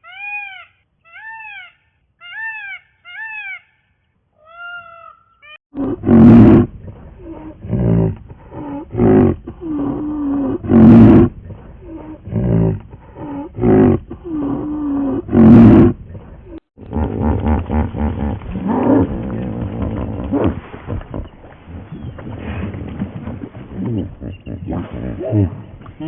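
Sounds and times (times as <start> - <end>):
big cat roaring: 5.7 - 16.0, 16.8 - 20.6, 23.7 - 25.7
big cat grunting: 5.8 - 20.6, 21.7 - 26.0.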